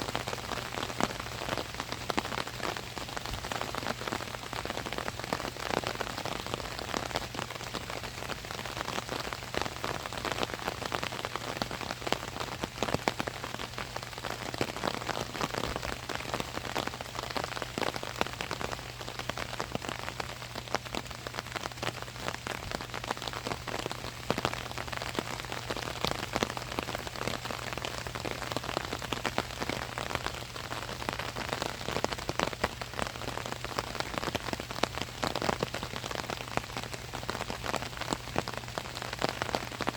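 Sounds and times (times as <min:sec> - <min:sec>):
rain on an umbrella: 0:00.0 - 0:39.9.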